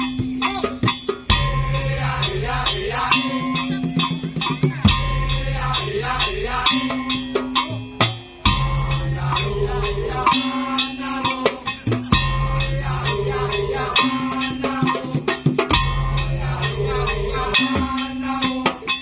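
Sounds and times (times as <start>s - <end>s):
drums and wooden percussion: 0.0s - 19.0s
low bass notes: 1.3s - 3.1s.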